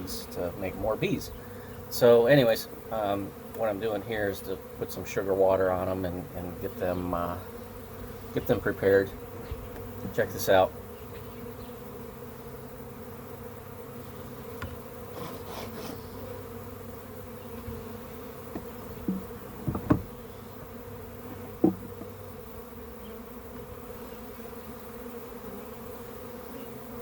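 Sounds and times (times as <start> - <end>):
bees buzzing: 0.0 - 27.0
short knocks: 18.5 - 20.2, 21.2 - 22.2.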